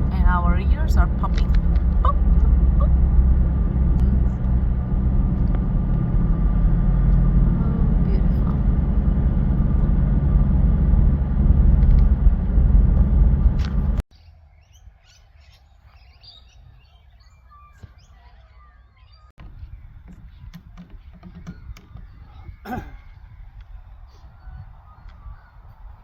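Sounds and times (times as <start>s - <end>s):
birds chirping: 0.0s - 12.5s, 13.4s - 26.0s
car road and engine rumble: 0.0s - 14.0s
outdoor background: 0.0s - 26.0s.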